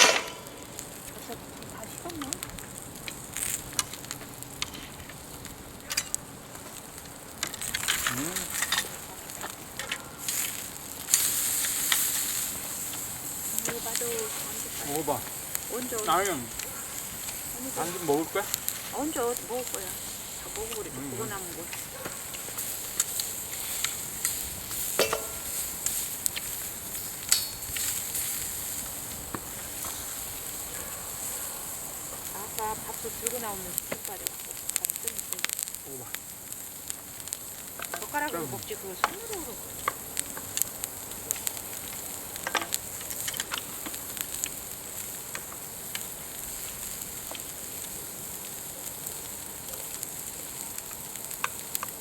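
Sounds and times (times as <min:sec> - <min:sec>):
meat sizzling: 0:00.0 - 0:52.0
wood fire crackling and popping: 0:00.0 - 0:52.0.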